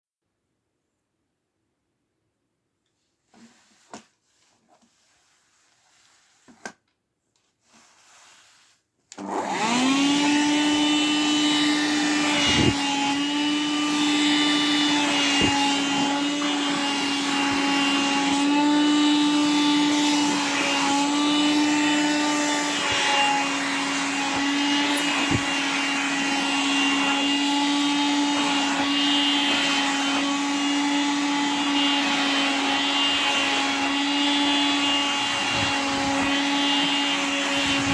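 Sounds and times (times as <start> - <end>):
vacuum cleaner motor: 7.8 - 37.9.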